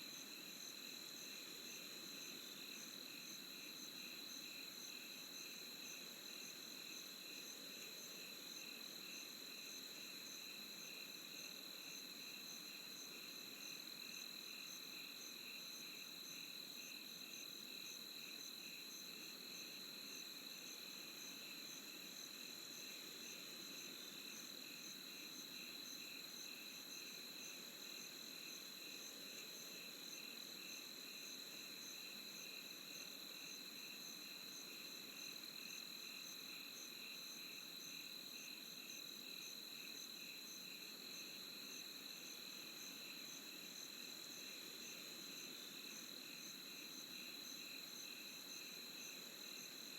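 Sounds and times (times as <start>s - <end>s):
crickets chirping: 0.1s - 49.9s.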